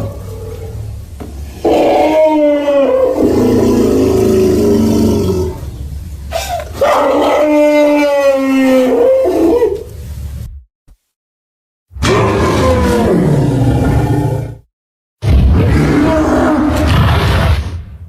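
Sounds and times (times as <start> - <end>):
elephant-like creature calls: 0.0 - 9.9.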